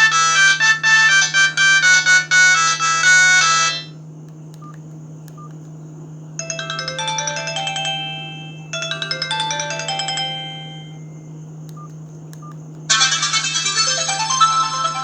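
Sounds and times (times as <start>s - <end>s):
polyphonic ringtone from phone speaker: 6.4s - 11.1s.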